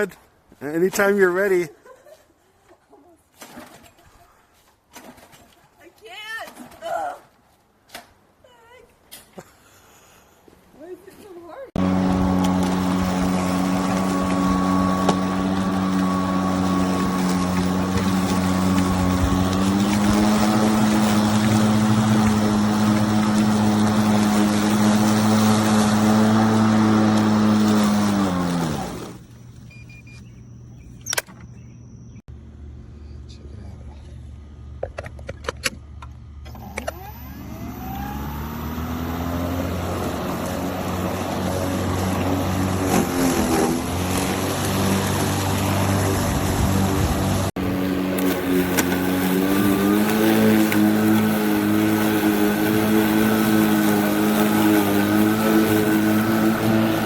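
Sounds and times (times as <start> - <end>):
lawn mower running: 11.7 - 32.8, 35.8 - 57.0
lawn mower clicks: 11.8 - 29.2, 47.8 - 57.0
low hum: 29.1 - 39.8.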